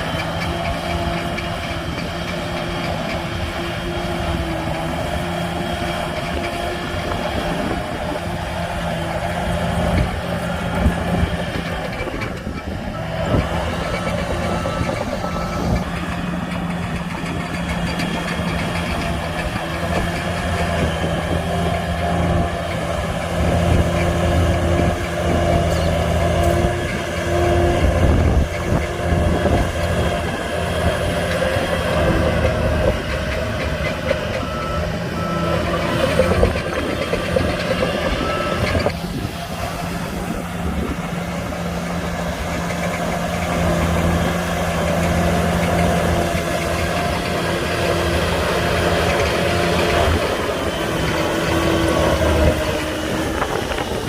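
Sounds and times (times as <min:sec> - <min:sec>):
heavy diesel engine running: 0:00.0 - 0:54.0
reversing alarm beeping: 0:12.9 - 0:16.2, 0:32.0 - 0:39.0.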